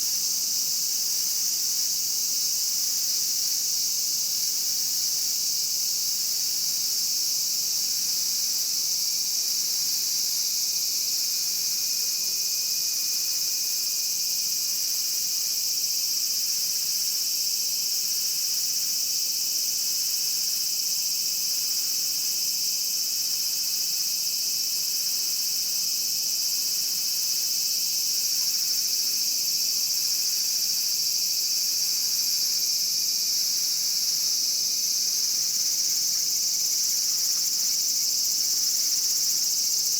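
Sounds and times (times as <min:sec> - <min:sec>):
cicadas buzzing: 0:23.3 - 0:39.9.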